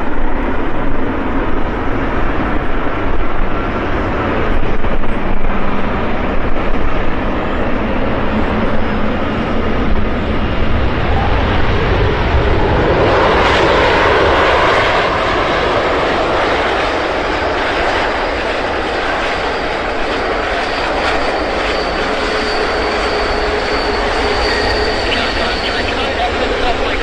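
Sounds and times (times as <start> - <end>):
jet engines roaring: 0.0 - 27.0
thin steady whine: 19.8 - 27.0.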